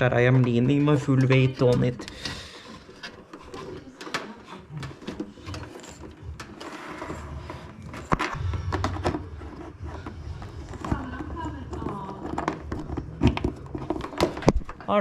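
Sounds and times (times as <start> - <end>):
clicks and knocks of cable work: 0.0 - 7.0, 10.7 - 14.9.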